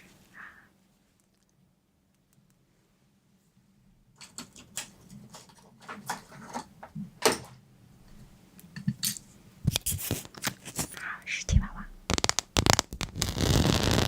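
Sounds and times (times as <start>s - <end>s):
objects being handled: 4.2s - 11.1s.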